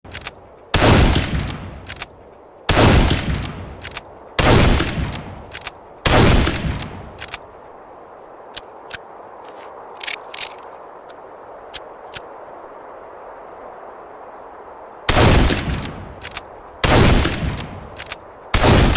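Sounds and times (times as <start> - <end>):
rifle shots echoing: 0.7 - 1.9, 2.7 - 5.3, 6.0 - 7.0, 15.1 - 16.0, 16.8 - 17.7, 18.5 - 18.9.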